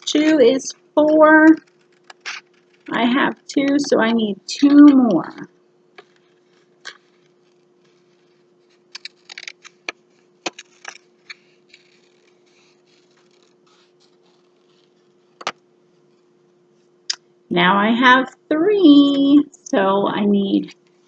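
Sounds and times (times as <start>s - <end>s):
faint steady hum: 0.0s - 21.0s
scissors cutting paper: 6.0s - 15.5s.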